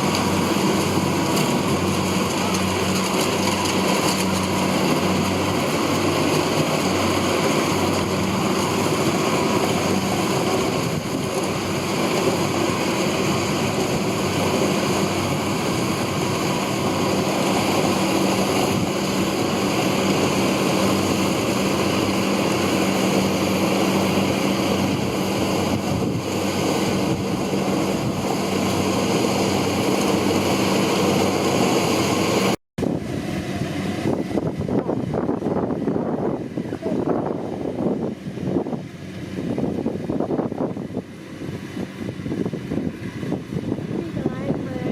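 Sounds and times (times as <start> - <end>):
combine harvester running: 0.0 - 44.9.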